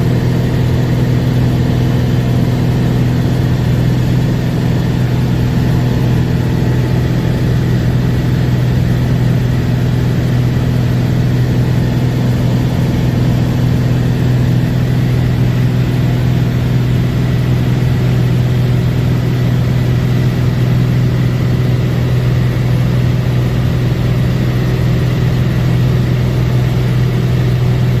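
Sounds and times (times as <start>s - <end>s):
propeller aircraft engine drone: 0.0s - 28.0s.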